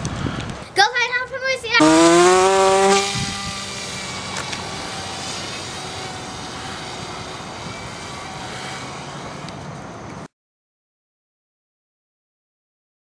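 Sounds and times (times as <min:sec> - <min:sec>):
model airplane motor drone: 0:01.8 - 0:10.3.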